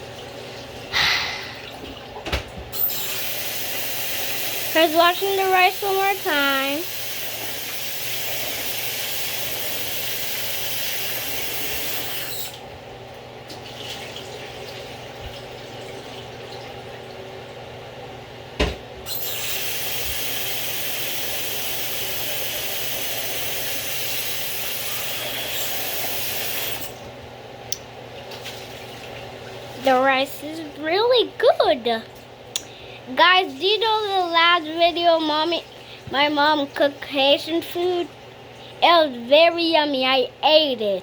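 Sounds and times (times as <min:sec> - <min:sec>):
tap running into sink: 0:02.2 - 0:02.7.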